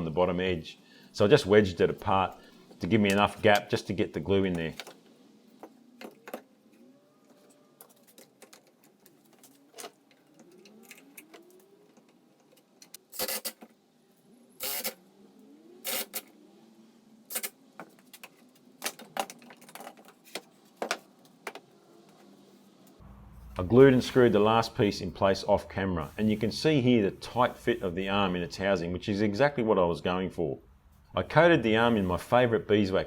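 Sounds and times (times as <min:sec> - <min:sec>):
wooden parts clicking and knocking: 0:17.8 - 0:21.7.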